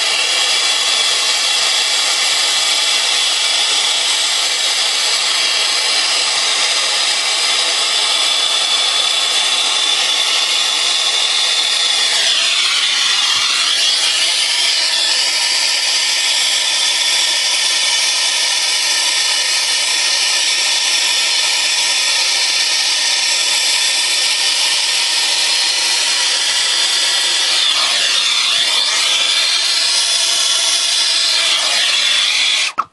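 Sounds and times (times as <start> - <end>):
torch flame hissing: 0.0 - 32.9.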